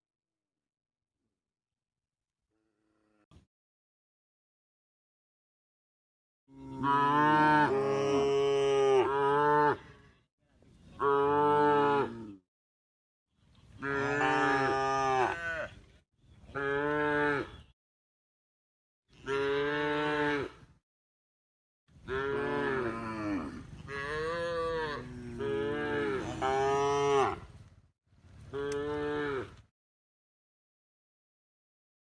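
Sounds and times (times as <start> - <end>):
cows mooing: 6.5 - 9.9, 13.8 - 15.7, 22.1 - 27.5.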